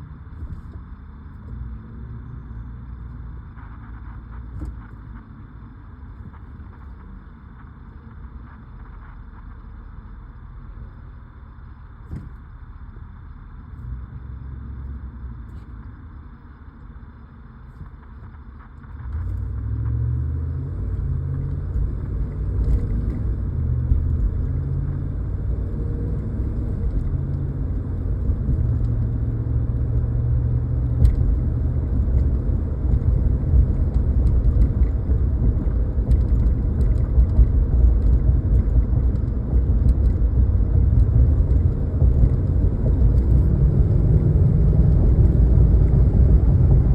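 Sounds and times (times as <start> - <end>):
pickup truck engine rumble: 17.9 - 46.9.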